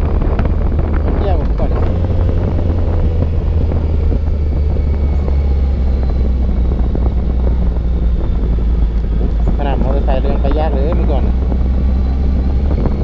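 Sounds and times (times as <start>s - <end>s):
motorcycle engine rumble: 0.0s - 13.0s
road noise: 0.0s - 13.0s.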